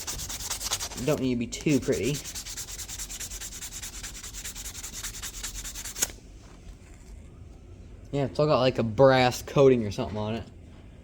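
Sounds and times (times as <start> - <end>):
sandpaper rubbing on metal: 0.0 - 6.1.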